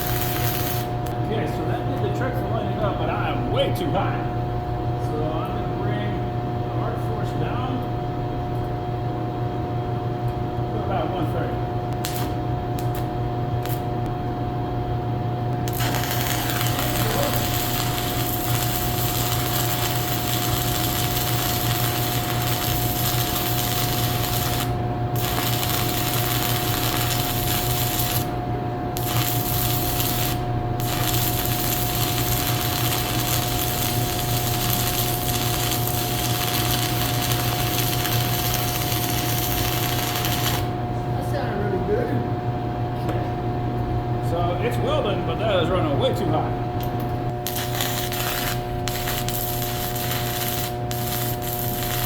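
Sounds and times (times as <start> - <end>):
welding arc crackling: 0.0 - 1.2, 11.9 - 14.1, 15.5 - 40.8, 47.3 - 52.0
welder cooling fan humming: 0.0 - 52.0.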